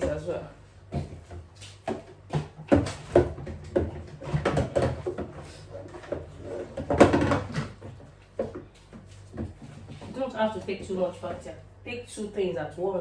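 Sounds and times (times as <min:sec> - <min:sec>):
food containers knocking and clicking: 0:00.9 - 0:11.1.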